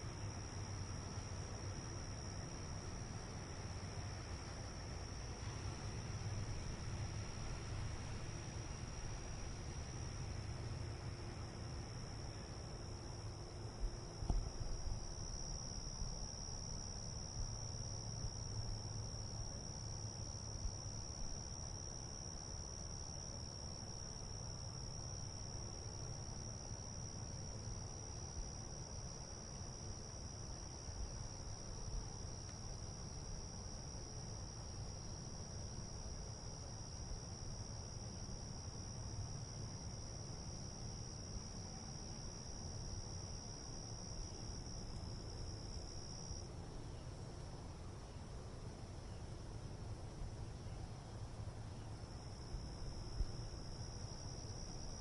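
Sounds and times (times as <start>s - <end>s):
insects chirring: 7.3s - 47.0s, 51.7s - 55.0s.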